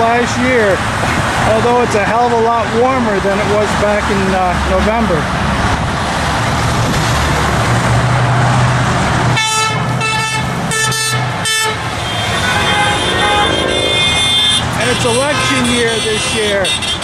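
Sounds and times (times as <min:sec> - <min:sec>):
heavy road traffic: 0:00.0 - 0:17.0
vehicle horns honking: 0:09.3 - 0:17.0.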